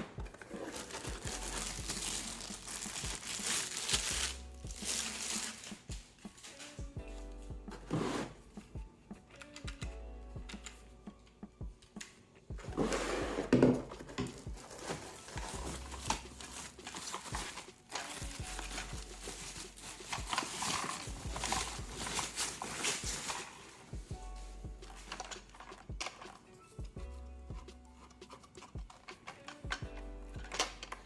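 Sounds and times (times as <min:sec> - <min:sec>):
packaging rustling and crinkling: 0:00.0 - 0:07.0, 0:12.7 - 0:26.4
soft background music: 0:00.0 - 0:31.0.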